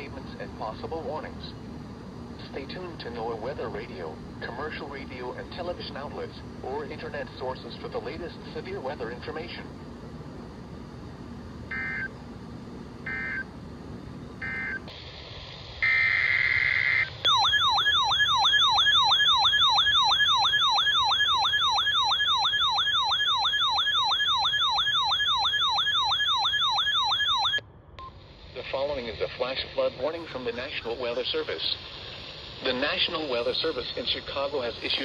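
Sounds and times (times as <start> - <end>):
warbling siren-like alert tone: 11.7 - 12.1, 13.1 - 13.5, 14.4 - 14.9, 15.8 - 27.6
digital data bursts: 15.8 - 27.4.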